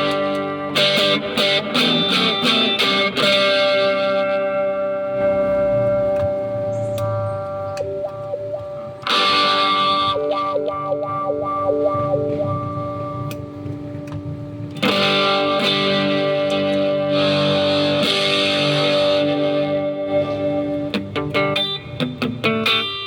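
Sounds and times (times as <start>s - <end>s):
electric guitar chords ringing: 0.0s - 23.0s
picked guitar notes: 0.0s - 23.0s.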